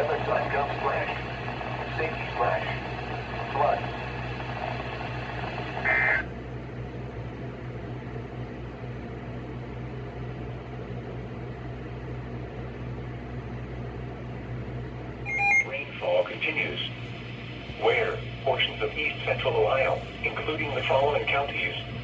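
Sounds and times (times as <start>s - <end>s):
radio receiver hum and hiss: 0.0s - 6.3s, 15.3s - 22.0s
high-pitched tones: 15.3s - 16.2s.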